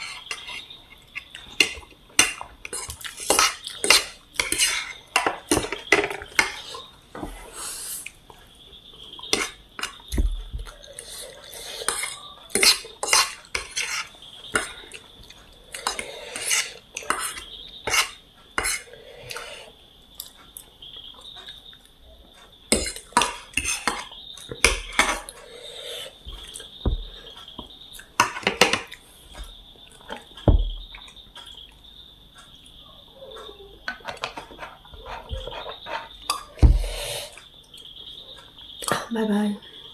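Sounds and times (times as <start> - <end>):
cutlery clinking and scraping on plate: 0.0 - 6.9, 9.3 - 10.0, 10.9 - 14.8, 15.8 - 19.5, 22.7 - 25.4, 28.2 - 29.0.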